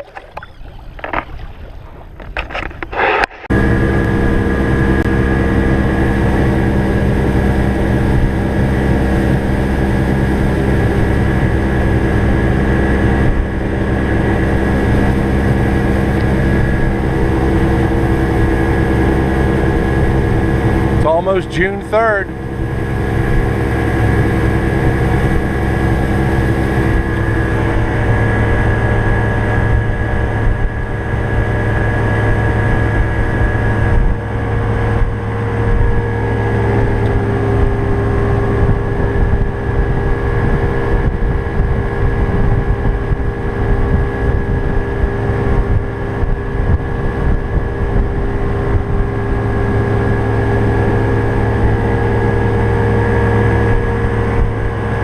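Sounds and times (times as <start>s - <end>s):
boat engine droning: 0.0s - 55.0s.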